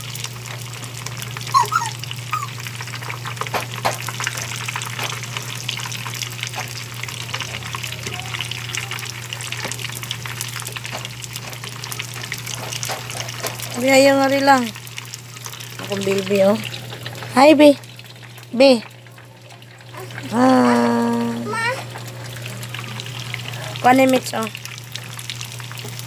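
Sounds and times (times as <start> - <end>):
chicken sizzling in oil: 0.0 - 26.0
high squeak: 1.5 - 2.5.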